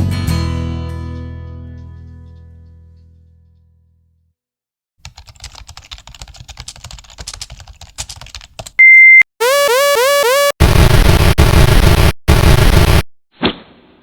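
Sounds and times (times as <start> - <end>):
keyboard typing: 5.0 - 8.8
high-pitched electronic beep: 8.8 - 11.4
stepping electronic tones: 8.8 - 13.0.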